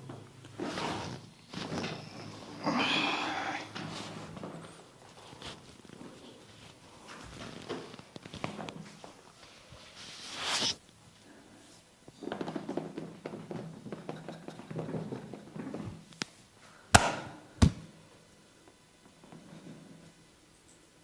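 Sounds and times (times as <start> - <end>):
sharp hand smacks: 16.9 - 17.8.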